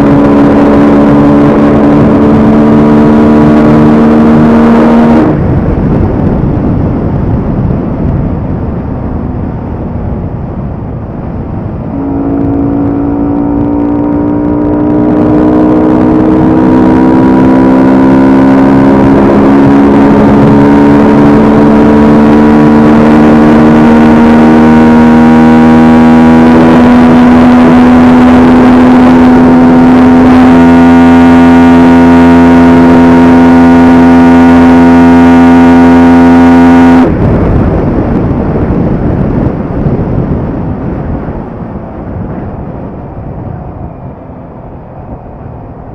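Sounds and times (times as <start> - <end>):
motorcycle engine revving: 0.0 - 8.9, 11.6 - 45.9.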